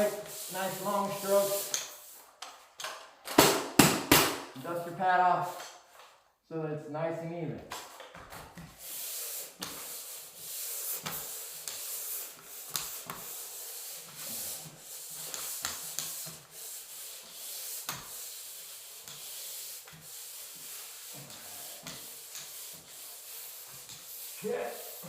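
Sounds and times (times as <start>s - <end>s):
sanding pad scraping drywall: 0.0s - 2.4s, 8.6s - 25.0s.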